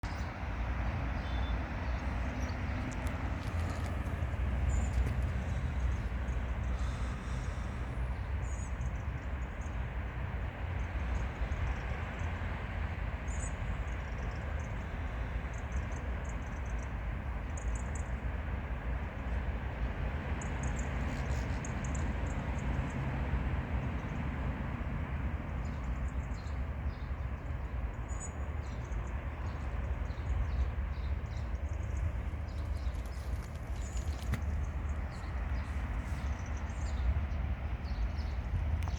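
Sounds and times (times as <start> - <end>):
diesel locomotive rumbling: 0.0 - 11.4, 19.5 - 38.9.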